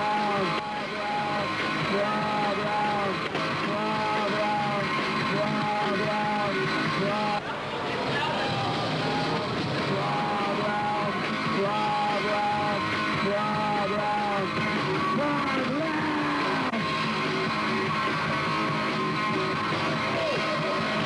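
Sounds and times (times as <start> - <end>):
guitars: 0.0 - 7.4, 8.6 - 21.0
person singing: 0.0 - 7.4, 9.9 - 14.5.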